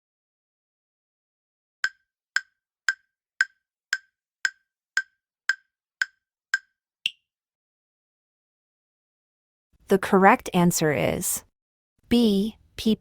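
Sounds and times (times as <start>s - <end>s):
countdown timer ticks: 1.8s - 7.2s.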